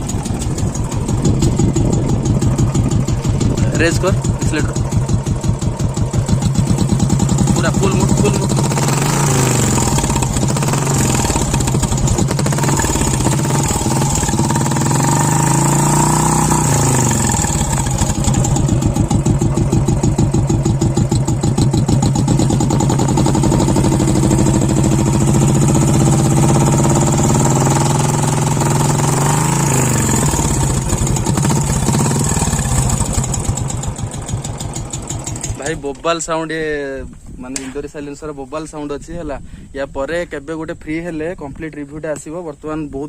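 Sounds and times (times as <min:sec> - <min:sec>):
motorcycle engine revving: 0:00.0 - 0:36.0.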